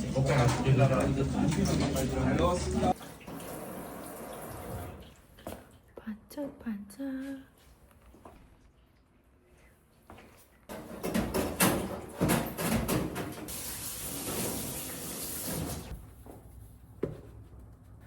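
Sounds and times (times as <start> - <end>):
household clattering and knocks: 10.7 - 13.5.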